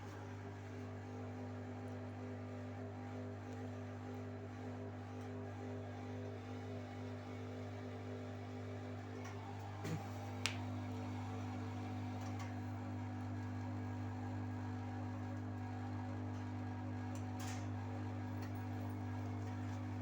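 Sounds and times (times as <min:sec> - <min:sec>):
washing machine spinning: 0:04.2 - 0:20.0.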